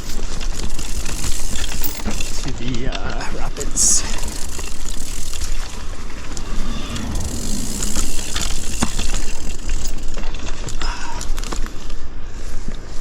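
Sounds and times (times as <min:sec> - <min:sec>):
wind on microphone: 0:03.8 - 0:10.2.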